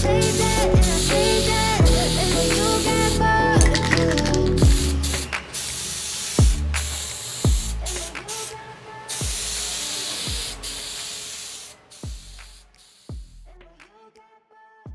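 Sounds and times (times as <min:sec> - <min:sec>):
music with deep bass: 0:00.0 - 0:05.3, 0:06.4 - 0:06.9, 0:07.5 - 0:07.9, 0:12.1 - 0:13.8
hissing spray: 0:00.0 - 0:13.2.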